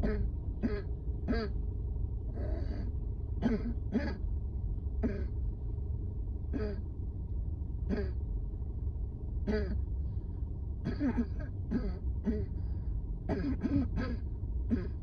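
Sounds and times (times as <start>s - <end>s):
person coughing: 0.0s - 1.5s, 2.4s - 4.2s, 5.0s - 5.3s, 6.6s - 6.8s, 9.5s - 9.8s, 10.8s - 12.6s, 13.3s - 15.0s
low rumble: 0.0s - 15.0s.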